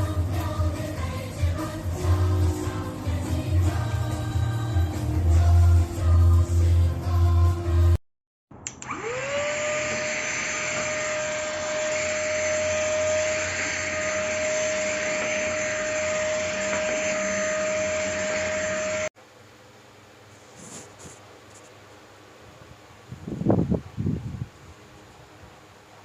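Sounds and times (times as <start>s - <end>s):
handheld vacuum cleaner motor whine: 8.7s - 19.1s.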